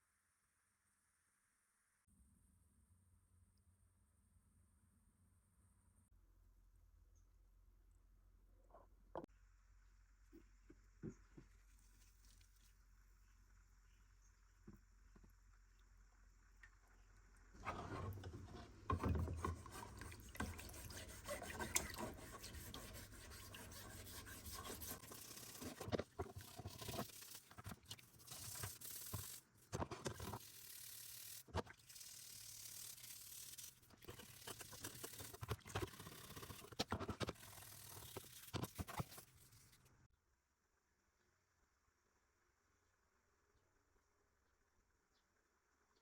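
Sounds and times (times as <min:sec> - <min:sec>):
brush scrubbing metal blade: 0:19.2 - 0:39.8.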